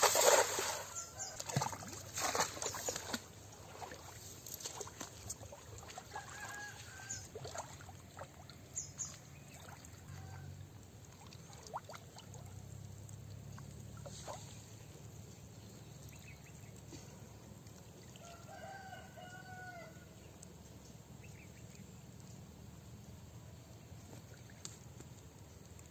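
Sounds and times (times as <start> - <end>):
water splashing and dribbling: 0.0 - 19.6
rooster crowing: 6.2 - 7.3, 18.2 - 20.1.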